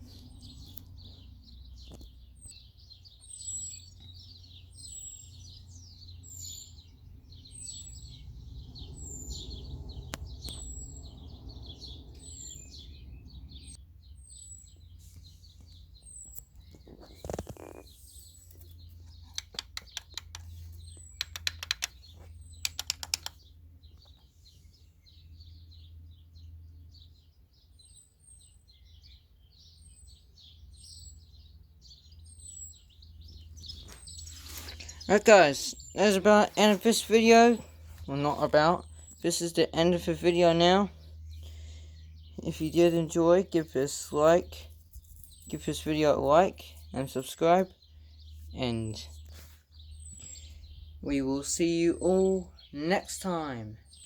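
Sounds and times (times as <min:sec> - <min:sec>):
birds twittering: 0:00.0 - 0:54.0
bird chirping high falling chirp: 0:00.4 - 0:54.0
sharp clicks: 0:19.3 - 0:23.5.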